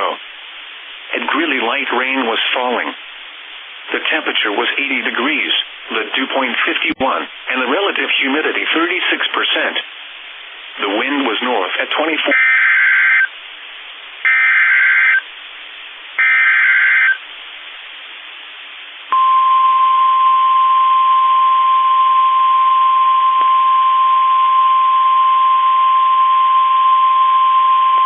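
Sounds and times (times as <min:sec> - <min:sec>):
radio data bursts: 0:10.8 - 0:13.4, 0:14.2 - 0:15.3, 0:16.2 - 0:17.3
steady warning alarm tone: 0:12.3 - 0:13.3, 0:14.3 - 0:15.2, 0:16.2 - 0:17.2.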